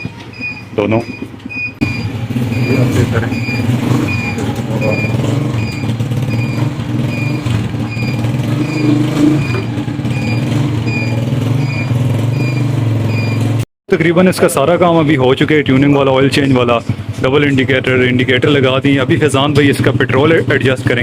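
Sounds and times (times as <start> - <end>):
indicator buzzer beeping: 0.0 - 13.6
motorcycle engine idling: 0.0 - 13.6, 15.2 - 21.0.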